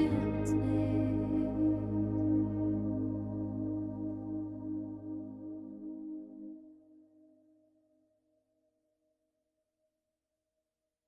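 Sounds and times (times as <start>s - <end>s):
ambient music chord: 0.0s - 7.4s.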